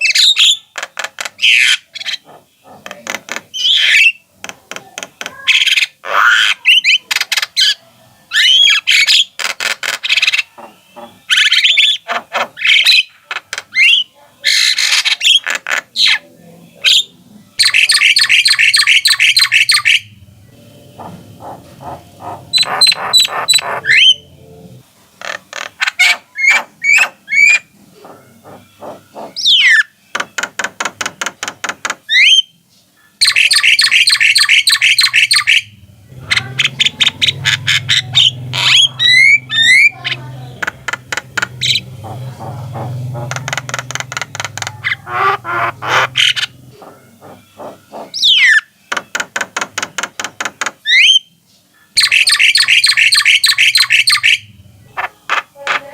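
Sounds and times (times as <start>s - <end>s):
birds calling and chattering: 0.0s - 55.9s
low hum: 20.0s - 24.8s.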